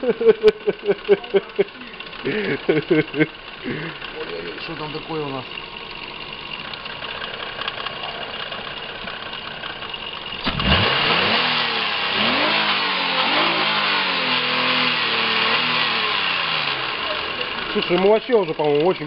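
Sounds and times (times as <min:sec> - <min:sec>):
engine knocking: 0:00.0 - 0:12.7, 0:13.3 - 0:19.0
car engine idling and revving: 0:00.0 - 0:19.0.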